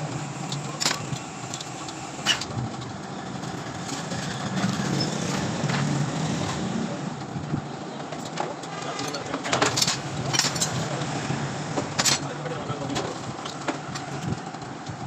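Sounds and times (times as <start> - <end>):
vehicle engine hum: 0.0 - 15.0.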